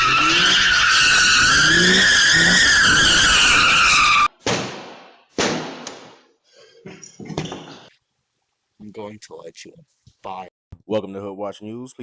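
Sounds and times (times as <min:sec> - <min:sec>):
car tyres squealing: 0:00.0 - 0:04.3.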